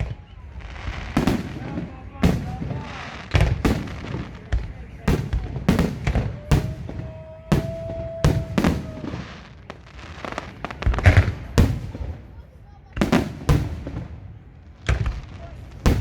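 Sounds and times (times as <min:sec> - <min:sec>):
fireworks bangs: 0:00.0 - 0:16.0
firework whistling tone: 0:05.8 - 0:09.5.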